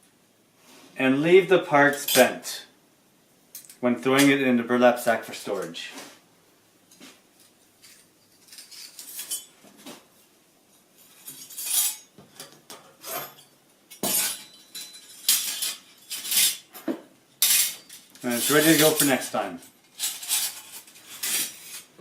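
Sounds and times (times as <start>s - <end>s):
metal parts clinking: 13.0s - 16.8s, 17.4s - 21.9s.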